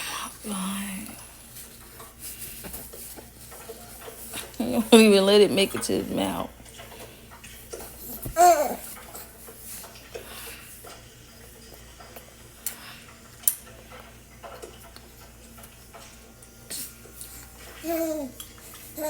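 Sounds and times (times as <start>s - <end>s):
baby vocalising: 8.0s - 8.9s.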